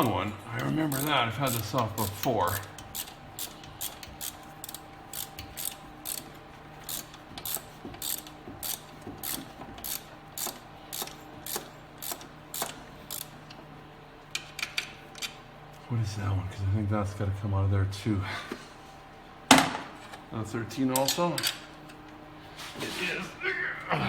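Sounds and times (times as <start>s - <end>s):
hand ratchet clicking: 0.0s - 13.4s.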